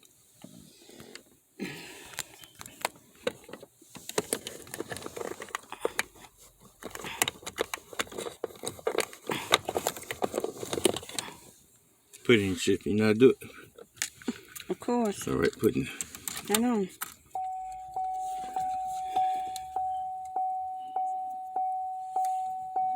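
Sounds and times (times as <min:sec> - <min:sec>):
plastic parts clicking and rustling: 0:02.0 - 0:17.4.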